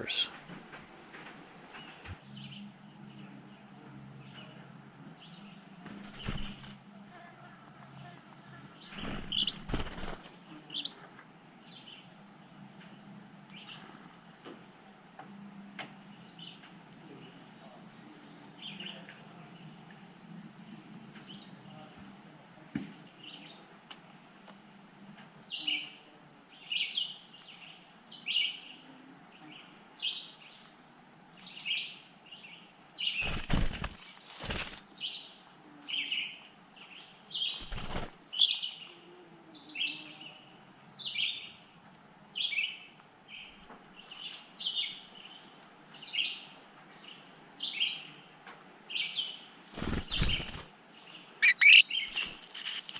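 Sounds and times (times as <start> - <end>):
bird chirping calls: 0.0 - 2.6, 5.2 - 11.0, 31.5 - 40.1, 49.0 - 52.9
wings bumping microphone: 5.9 - 10.3, 33.2 - 38.9, 49.8 - 50.7, 51.3 - 52.9.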